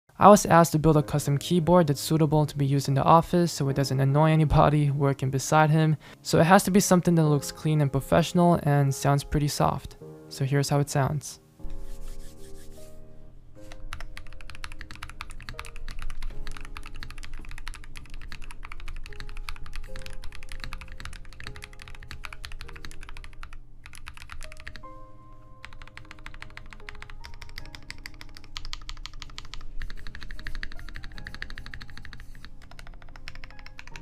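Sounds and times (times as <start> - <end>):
mechanical keyboard typing: 13.7 - 24.9, 25.6 - 34.0.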